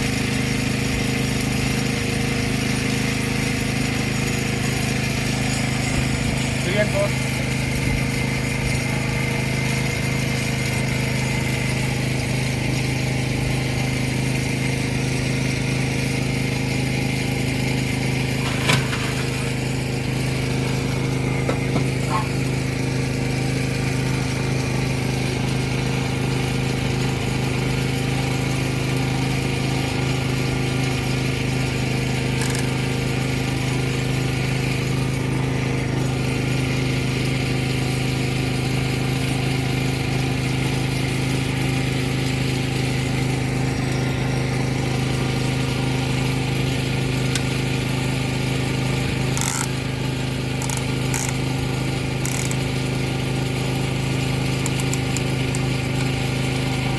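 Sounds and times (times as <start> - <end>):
motor humming: 0.0 - 56.9
sharp clicks: 54.6 - 55.6.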